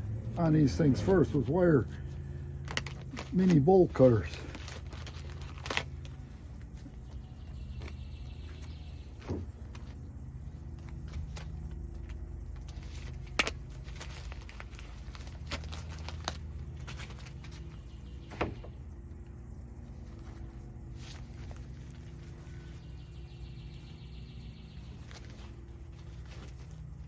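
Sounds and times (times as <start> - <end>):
steady low rumble: 0.0 - 27.0.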